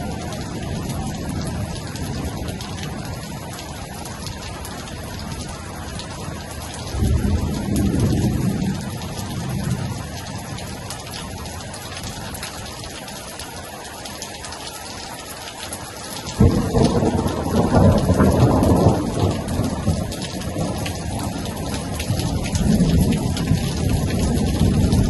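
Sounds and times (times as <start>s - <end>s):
thunder rumbling: 0.0s - 10.9s, 16.3s - 25.0s
steady rain falling: 0.0s - 25.0s.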